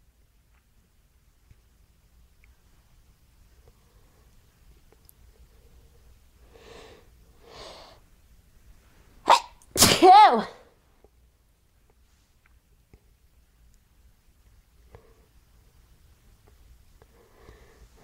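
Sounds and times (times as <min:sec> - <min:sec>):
woman sneezing: 0:09.3 - 0:10.7.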